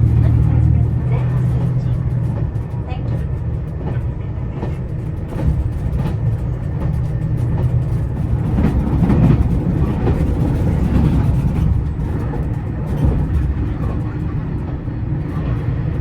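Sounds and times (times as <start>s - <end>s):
diesel railcar engine rumble: 0.0s - 16.0s.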